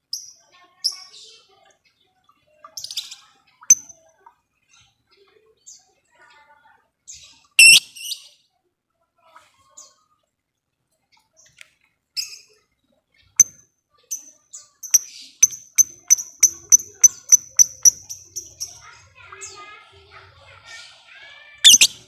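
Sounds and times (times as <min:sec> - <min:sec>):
lovebird chirping: 0:03.7 - 0:03.9, 0:07.6 - 0:08.1, 0:14.8 - 0:18.8, 0:21.6 - 0:22.0
lovebird ticking chirps: 0:03.7 - 0:03.9, 0:07.6 - 0:07.8, 0:14.8 - 0:18.8, 0:21.7 - 0:22.0.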